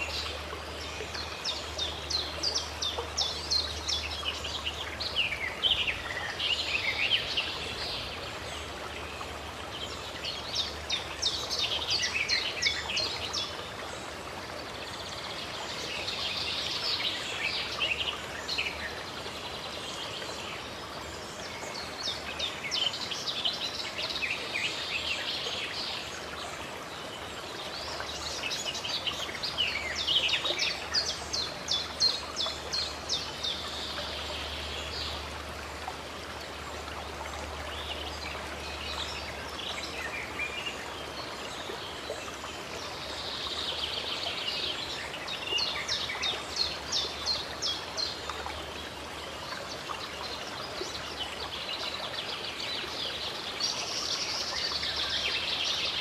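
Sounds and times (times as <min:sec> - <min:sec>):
running water: 0:00.0 - 0:56.0.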